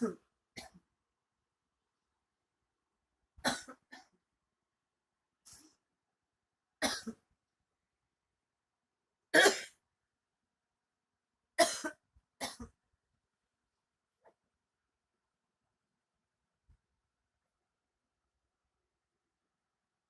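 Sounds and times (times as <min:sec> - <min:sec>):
person coughing: 0:00.0 - 0:00.8, 0:03.5 - 0:04.1, 0:06.8 - 0:07.2, 0:09.4 - 0:09.8, 0:11.6 - 0:12.8.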